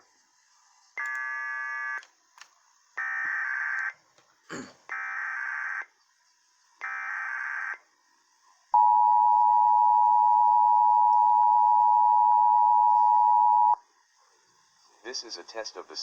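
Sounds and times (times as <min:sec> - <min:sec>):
two-tone attention signal: 0:08.8 - 0:13.8.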